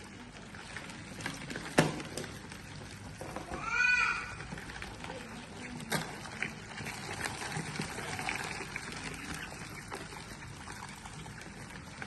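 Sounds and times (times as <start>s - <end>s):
water trickling and splashing: 4.3s - 12.0s.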